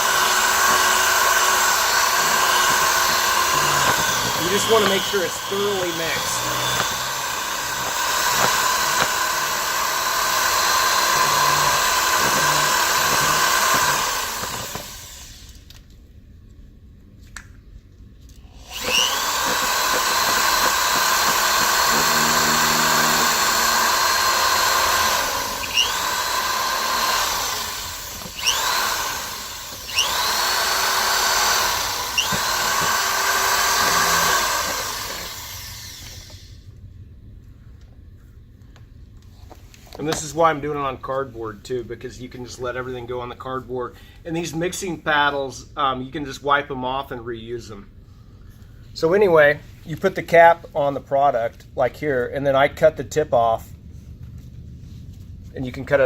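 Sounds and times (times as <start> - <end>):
electric drill motor whine: 0.0 - 15.7, 18.5 - 36.7.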